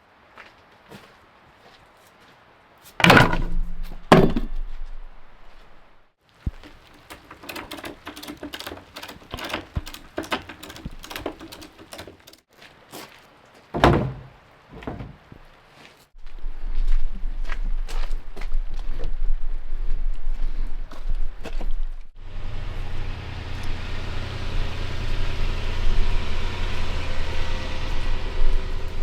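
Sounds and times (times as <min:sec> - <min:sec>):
loose pieces clattering: 0:03.0 - 0:05.1, 0:06.6 - 0:12.4
debris thunking into trailer: 0:03.0 - 0:05.3, 0:13.8 - 0:15.3.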